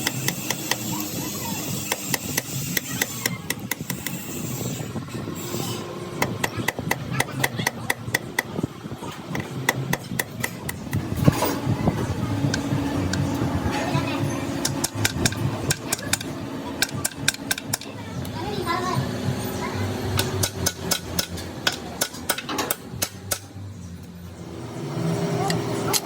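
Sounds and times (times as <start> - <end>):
steady low hum: 3.6 - 25.9
hammer striking metal: 20.1 - 23.5.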